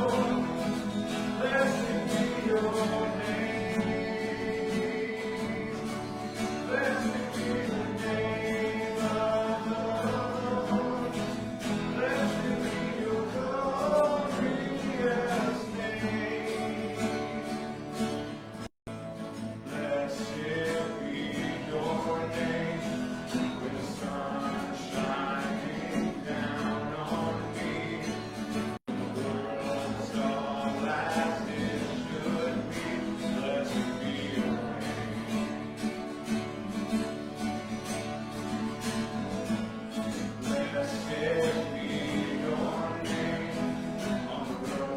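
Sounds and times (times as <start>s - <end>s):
congregation singing worship song: 0.0s - 44.9s
guitar accompaniment: 0.0s - 44.9s.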